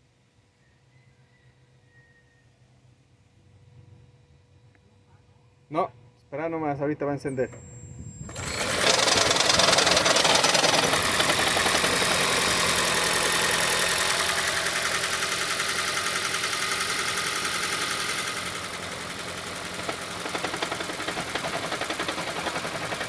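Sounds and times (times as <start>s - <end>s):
car engine starting: 7.4s - 23.0s
engine knocking: 8.3s - 23.0s.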